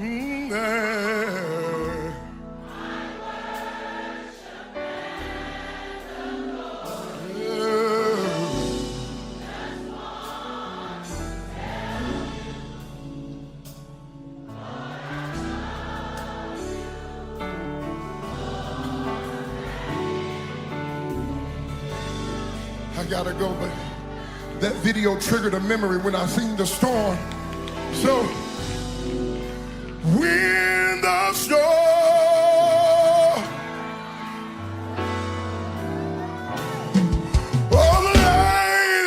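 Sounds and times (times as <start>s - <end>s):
gospel choir singing: 0.0s - 39.0s
band playing keys and bass: 5.1s - 39.0s.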